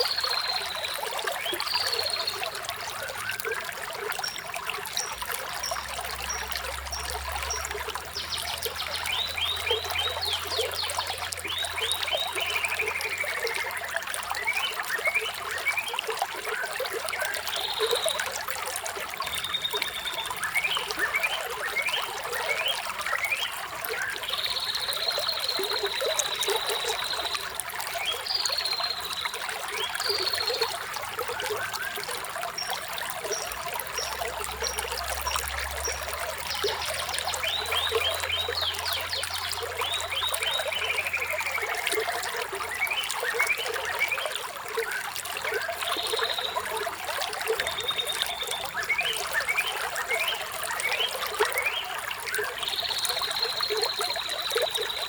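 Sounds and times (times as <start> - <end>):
water trickling and splashing: 0.0 - 55.0
songbirds chirping: 31.4 - 55.0.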